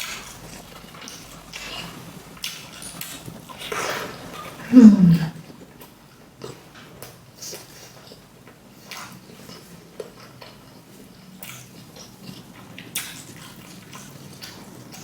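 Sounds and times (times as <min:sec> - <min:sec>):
person chewing food: 0:04.6 - 0:15.0.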